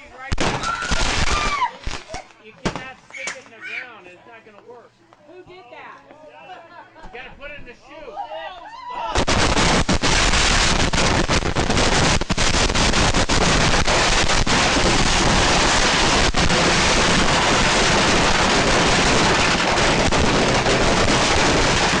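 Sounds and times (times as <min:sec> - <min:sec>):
fireworks banging and crackling: 0:00.0 - 0:03.6, 0:09.1 - 0:22.0.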